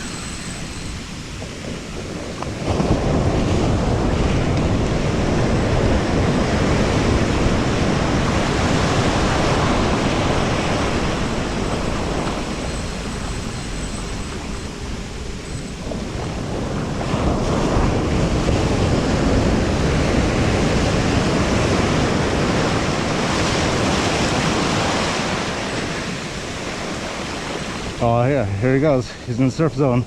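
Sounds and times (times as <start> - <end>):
ocean surf breaking: 0.0 - 30.0
wind on microphone: 0.0 - 30.0.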